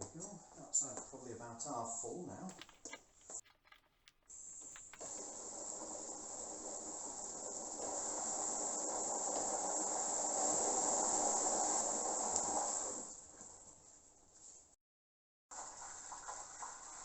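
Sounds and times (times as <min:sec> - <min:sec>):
water rushing through hose: 0:02.5 - 0:13.3, 0:15.5 - 0:17.0.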